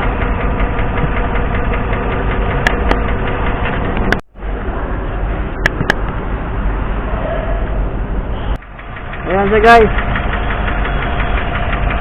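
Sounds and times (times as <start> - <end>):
engine idling: 0.0 - 4.6, 8.6 - 12.0.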